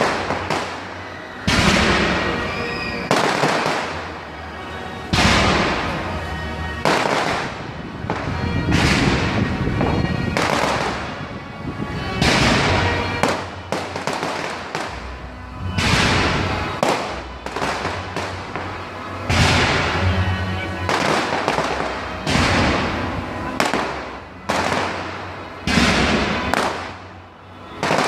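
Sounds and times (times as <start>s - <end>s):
fireworks banging: 0.0s - 28.0s.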